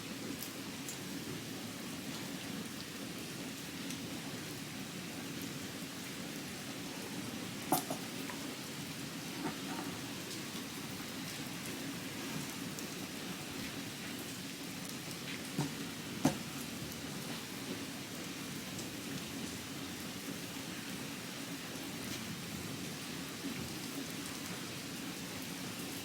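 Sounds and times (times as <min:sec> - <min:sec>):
steady rain: 0:00.0 - 0:26.0.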